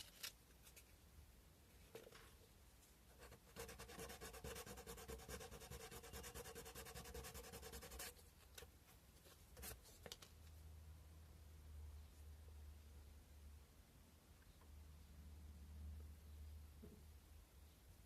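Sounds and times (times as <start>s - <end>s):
sandpaper rubbing: 3.3s - 8.2s.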